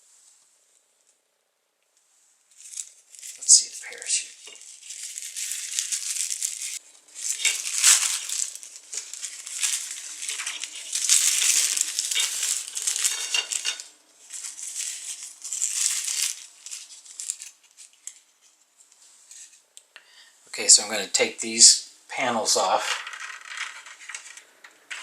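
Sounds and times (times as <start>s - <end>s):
toy parachute rustling: 2.4s - 19.6s.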